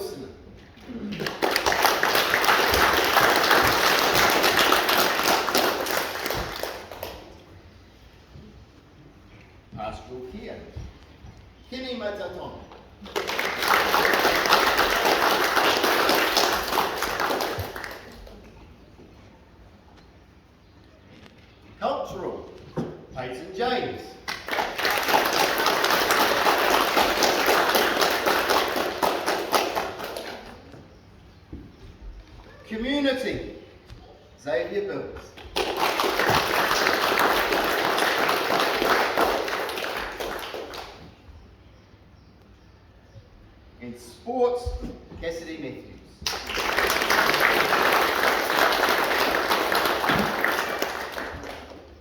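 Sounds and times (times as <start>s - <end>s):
audience clapping: 0.9s - 7.5s, 13.0s - 18.6s, 24.2s - 30.8s, 35.3s - 41.2s, 46.2s - 52.0s.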